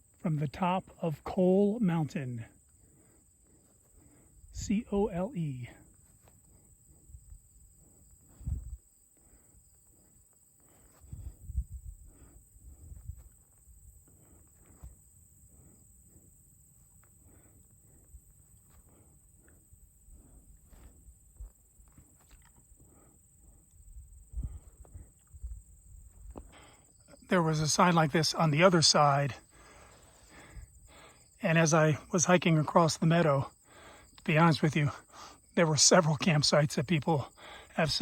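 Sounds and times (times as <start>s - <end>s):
footsteps on trail: 2.6s - 31.3s.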